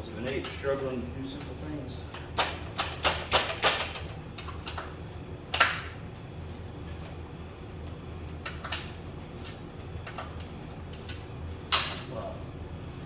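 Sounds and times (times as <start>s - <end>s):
steady low hum: 0.0s - 13.0s
sharp clicks and knocks of hand work: 1.4s - 4.9s, 5.5s - 6.3s.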